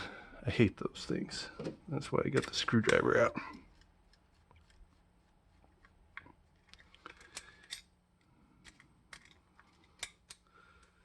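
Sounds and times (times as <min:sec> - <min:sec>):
faint steady hum: 0:00.0 - 0:11.0
screwdriver clicking and scraping: 0:03.6 - 0:11.0.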